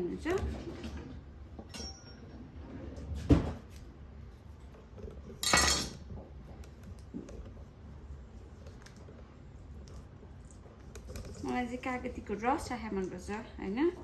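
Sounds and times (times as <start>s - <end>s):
dishes clattering: 5.4s - 6.1s.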